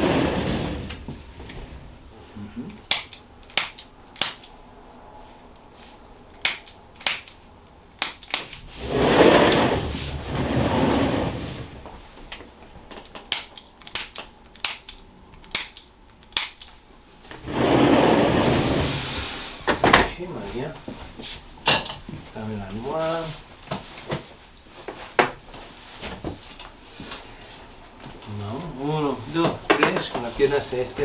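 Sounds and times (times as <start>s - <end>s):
sharp clicks: 2.7s - 4.6s, 6.4s - 7.4s, 8.0s - 8.6s, 13.2s - 16.8s.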